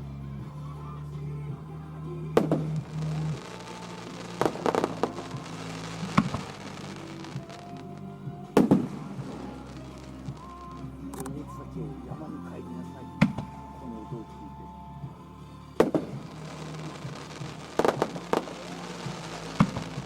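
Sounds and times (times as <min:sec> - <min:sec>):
music playing: 0:00.0 - 0:20.0
firework shells bursting: 0:02.4 - 0:08.0, 0:08.6 - 0:11.3, 0:15.8 - 0:20.0
crackling firework reports: 0:02.4 - 0:11.4, 0:15.8 - 0:20.0.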